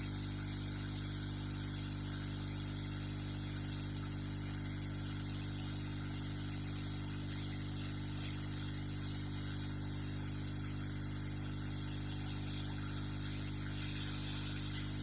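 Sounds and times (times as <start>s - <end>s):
hot air blower hissing: 2.5s - 15.0s
electrical hum: 5.2s - 15.0s.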